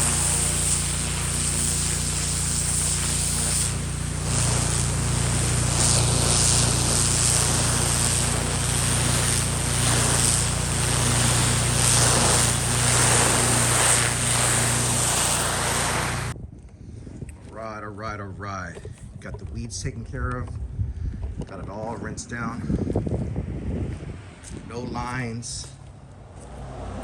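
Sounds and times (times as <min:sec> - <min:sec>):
pressure washer engine humming: 0:00.0 - 0:16.4
water jet spraying concrete: 0:00.0 - 0:16.4.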